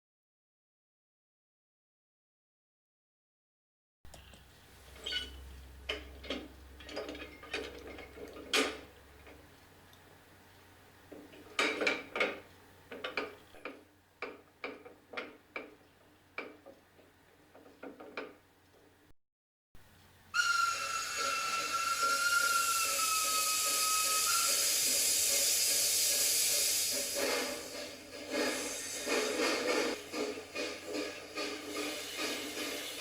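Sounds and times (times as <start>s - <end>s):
sharp clicks and knocks: 11.1s - 15.8s, 16.4s - 18.8s
steam locomotive hissing: 20.3s - 33.0s
whistling tone: 20.4s - 25.4s.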